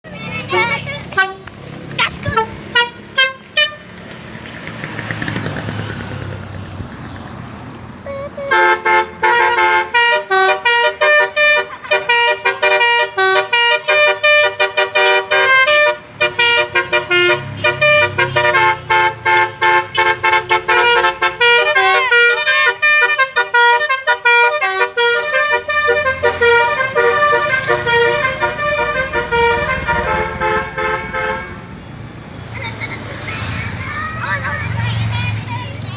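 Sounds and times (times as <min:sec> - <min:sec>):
vehicle noise: 0:00.0 - 0:35.9
multi-trumpet air horn melodies: 0:02.4 - 0:03.8, 0:08.0 - 0:31.6
short horn toots: 0:08.0 - 0:11.5.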